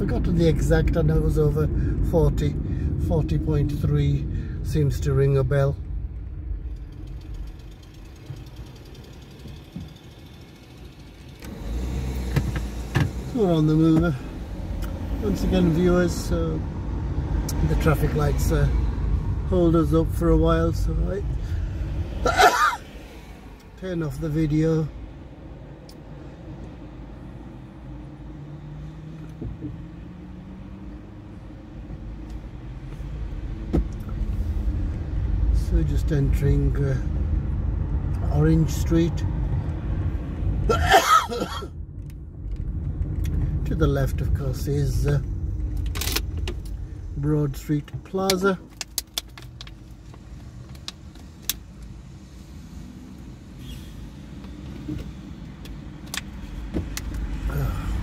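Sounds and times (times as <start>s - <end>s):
car engine and road rumble: 0.0s - 58.0s
clicks and rattles inside car: 4.7s - 11.6s, 12.2s - 14.2s, 29.2s - 29.9s, 31.8s - 34.3s, 40.7s - 52.0s, 54.4s - 58.0s.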